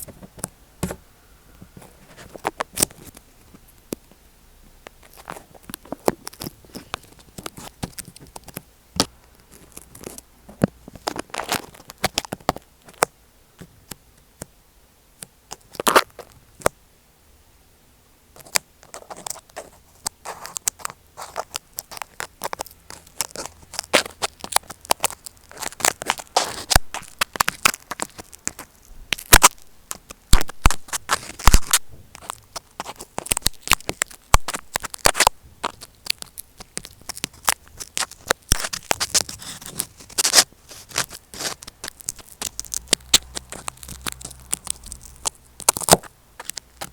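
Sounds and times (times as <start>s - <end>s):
tools scratching on tape: 5.0s - 10.2s, 18.4s - 46.9s.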